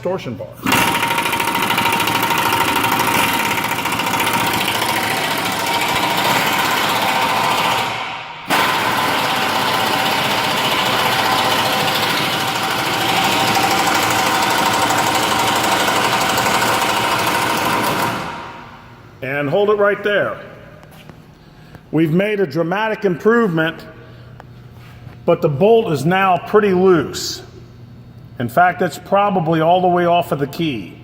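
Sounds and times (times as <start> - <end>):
impact wrench hammering: 0.7 - 18.8.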